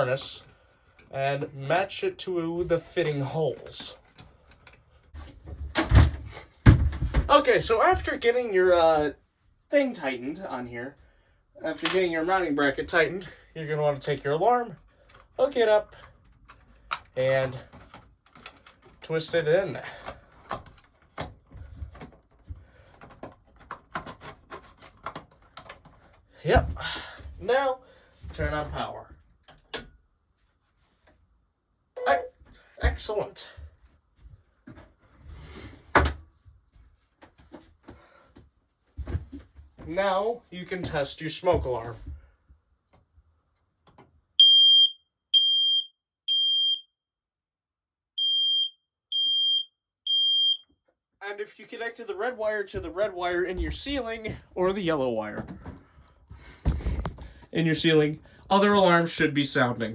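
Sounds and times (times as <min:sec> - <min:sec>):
plastic rubbing and scraping: 0:20.6 - 0:26.2
smoke alarm beeping: 0:44.4 - 0:46.9, 0:48.2 - 0:50.7.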